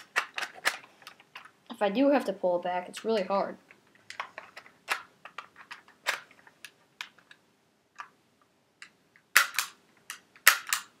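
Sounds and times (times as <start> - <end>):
plastic toy pistol clicking: 9.4 - 11.0.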